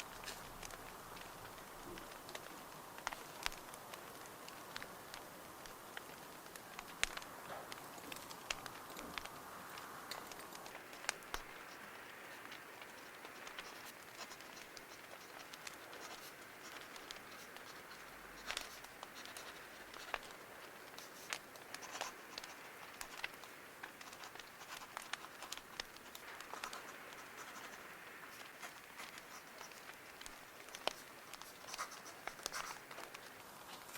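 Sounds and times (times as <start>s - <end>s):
bonfire hissing and crackling: 0.0s - 33.9s
paper rustling: 10.1s - 33.9s.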